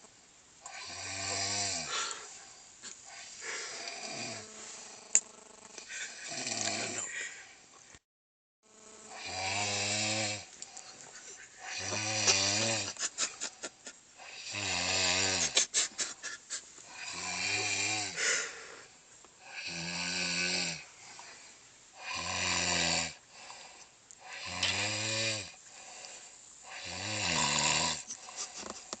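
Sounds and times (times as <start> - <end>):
low buzzing snoring: 0.6 - 7.6, 8.7 - 13.6, 14.2 - 29.0
quick clicks in snore: 5.1 - 6.9, 23.4 - 24.9, 26.0 - 26.2, 26.8 - 29.0.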